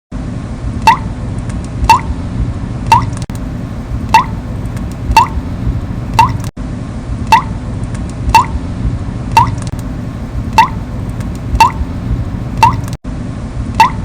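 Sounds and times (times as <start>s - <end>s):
low background rumble: 0.2s - 14.0s.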